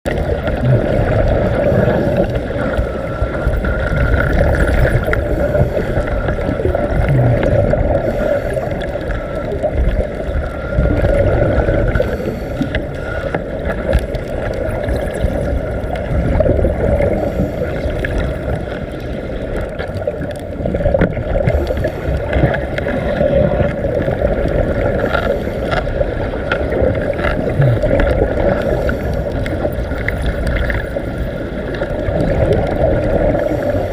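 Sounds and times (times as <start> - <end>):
gurgling water: 0.0 - 33.9
underwater rumble: 0.0 - 33.9
faint crackles: 0.1 - 33.9.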